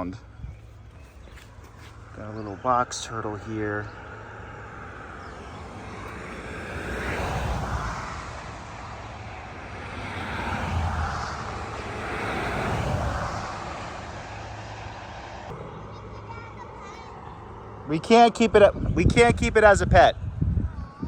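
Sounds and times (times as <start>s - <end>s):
road traffic passing: 0.0s - 21.0s.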